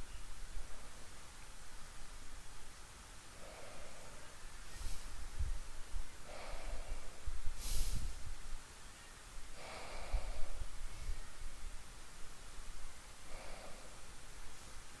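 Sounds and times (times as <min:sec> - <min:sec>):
nasal breaths or sniffs: 0:04.7 - 0:05.2, 0:06.3 - 0:08.2.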